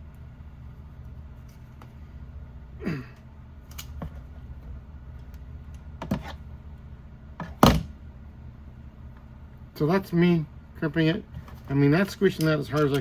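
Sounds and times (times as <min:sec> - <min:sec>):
low steady hum: 0:00.0 - 0:13.0
wire crimper clicks: 0:12.4 - 0:13.0.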